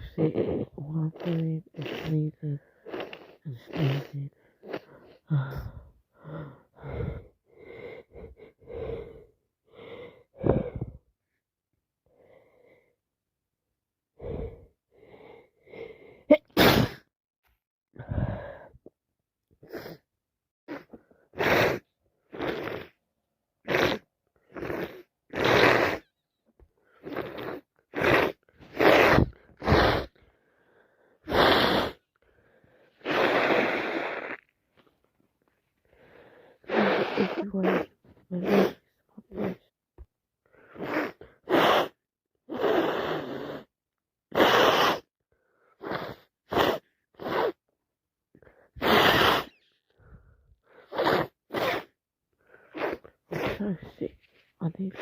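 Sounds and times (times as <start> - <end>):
woman gasping: 2.4 - 9.3, 35.9 - 39.6
woman sneezing: 16.3 - 17.1, 36.7 - 39.6.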